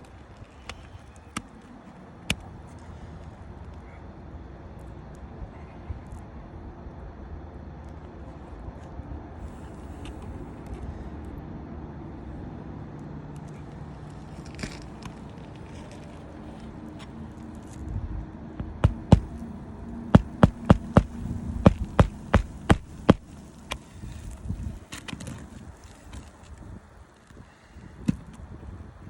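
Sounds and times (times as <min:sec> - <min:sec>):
steady low hum: 0:00.0 - 0:29.0
sharp knocks or clicks: 0:18.6 - 0:19.4, 0:20.2 - 0:23.3.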